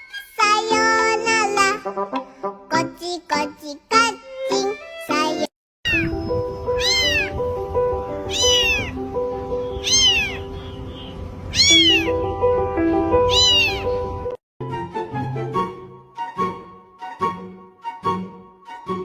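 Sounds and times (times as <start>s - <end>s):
cat meowing: 5.9s - 7.4s, 8.2s - 9.0s, 9.7s - 10.5s, 11.5s - 12.2s, 13.2s - 14.1s
background music: 12.2s - 19.0s.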